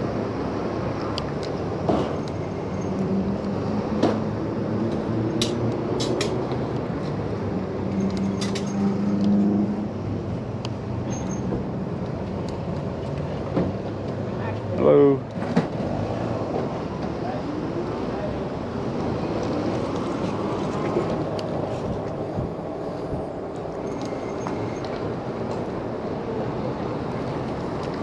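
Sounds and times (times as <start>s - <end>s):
road noise: 0.0s - 28.0s.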